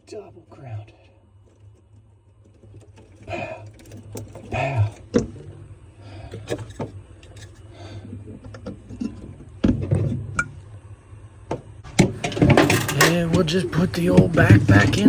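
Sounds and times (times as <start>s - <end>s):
low steady hum: 0.0s - 15.0s
clicks and knocks of plastic parts: 11.5s - 15.0s.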